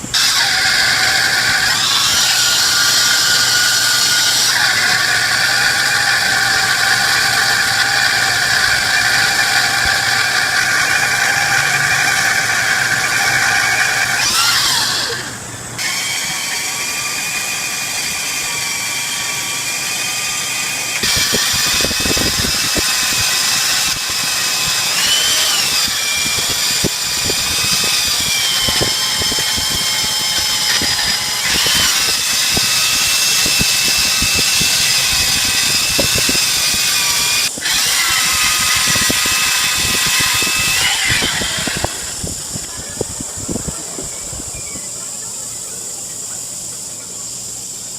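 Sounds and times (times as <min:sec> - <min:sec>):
machine tool motor whining: 0:00.0 - 0:44.9.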